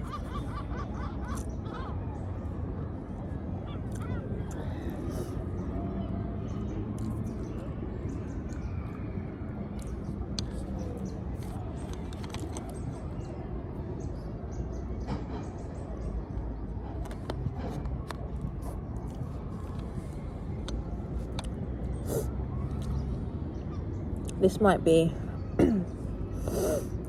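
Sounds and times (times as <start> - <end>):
low outdoor rumble: 0.0 - 27.0.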